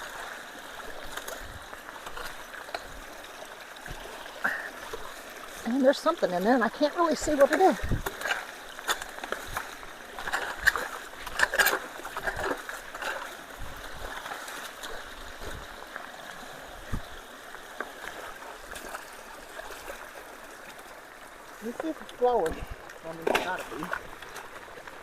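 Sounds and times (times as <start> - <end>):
creek water flowing: 0.0 - 25.0.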